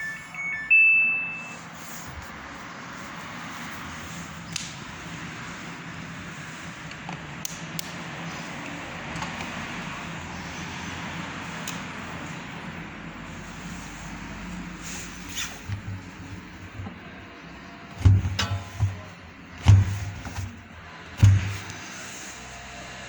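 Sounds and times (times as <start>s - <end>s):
electronic beep: 0.0s - 1.7s
washing machine hum and hiss: 8.4s - 23.0s.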